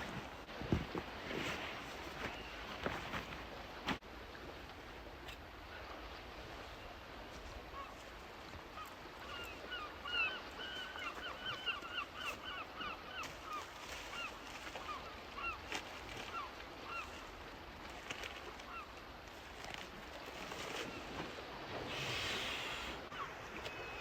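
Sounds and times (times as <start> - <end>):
birds calling: 8.8 - 15.6.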